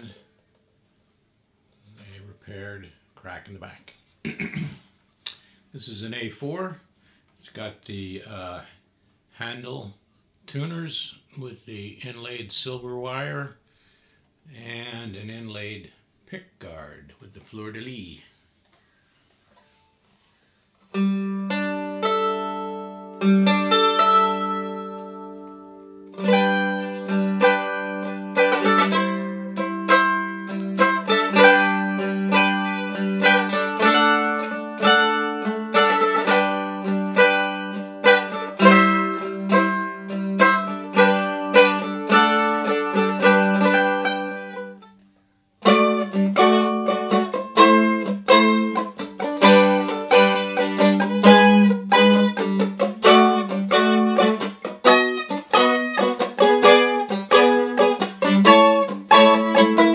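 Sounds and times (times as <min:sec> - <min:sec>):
mandolin picking notes and chords: 0:20.9 - 0:45.0, 0:45.6 - 0:59.9.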